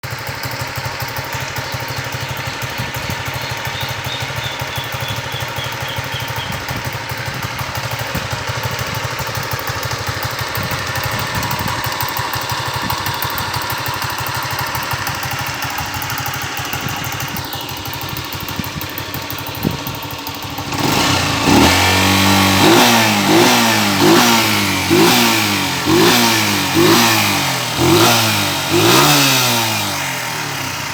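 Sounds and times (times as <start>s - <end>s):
motorcycle engine idling: 0.0s - 30.9s
engine revving: 20.4s - 30.9s.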